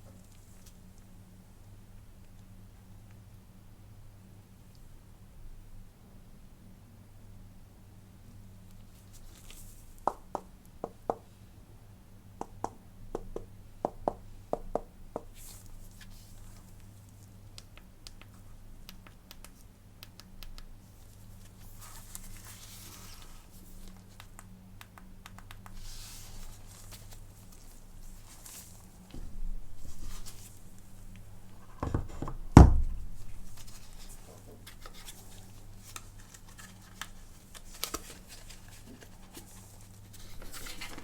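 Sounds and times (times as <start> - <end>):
low steady hum: 0.0 - 41.0
light taps and clicks: 16.8 - 20.8, 23.8 - 25.8
packaging rustling: 33.1 - 41.0.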